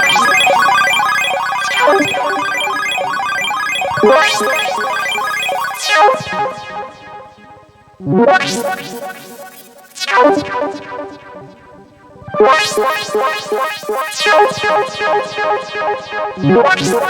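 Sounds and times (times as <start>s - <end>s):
chiptune synth arpeggios: 0.0s - 6.9s.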